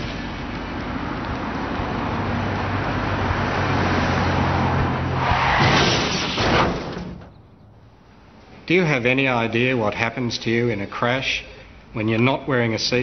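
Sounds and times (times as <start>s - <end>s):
car engine hum and road noise: 0.0s - 6.0s.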